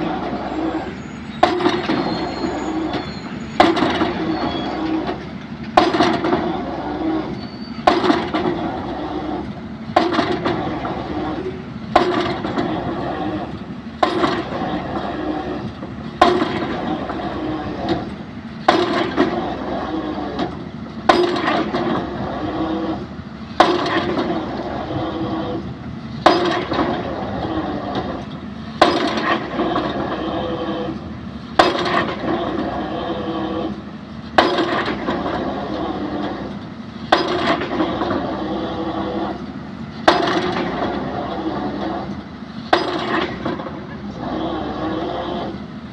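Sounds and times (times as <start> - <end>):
excavator engine and hydraulics: 0.0 - 45.9
drop hammer striking pile: 37.1 - 37.9.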